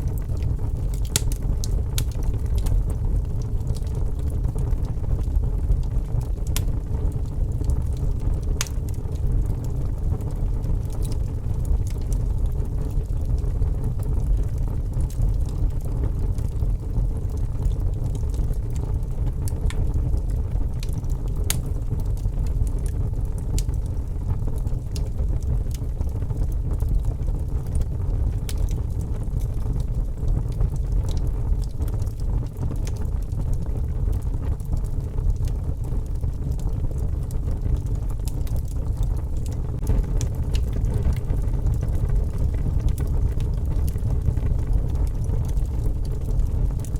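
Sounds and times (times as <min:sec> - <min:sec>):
wood fire crackling: 0:00.0 - 0:46.9
storm wind rumbling: 0:26.8 - 0:46.9.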